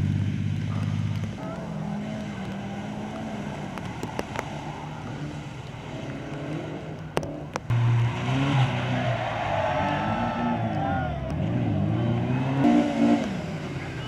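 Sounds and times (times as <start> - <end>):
car engines running: 0.0 - 14.0
engine revving: 7.7 - 14.0.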